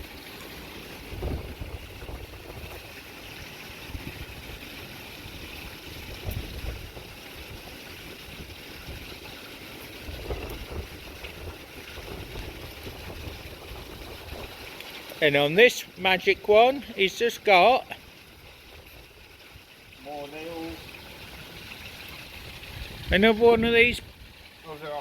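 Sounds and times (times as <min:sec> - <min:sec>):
steady outdoor hiss: 0:00.0 - 0:25.0
wind buffeting the microphone: 0:01.0 - 0:03.0, 0:03.8 - 0:04.6, 0:05.2 - 0:14.7, 0:21.9 - 0:24.6.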